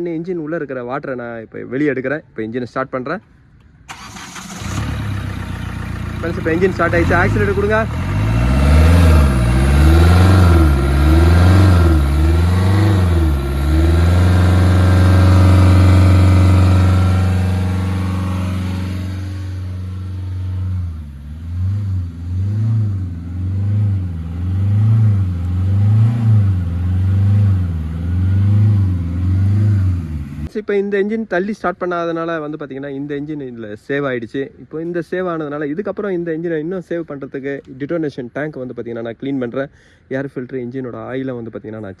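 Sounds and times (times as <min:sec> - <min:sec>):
diesel engine revving: 0:03.9 - 0:30.5.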